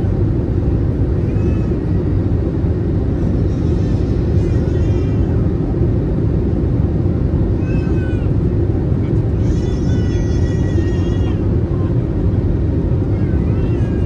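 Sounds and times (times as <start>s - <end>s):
airplane cabin engine rumble: 0.0s - 14.0s.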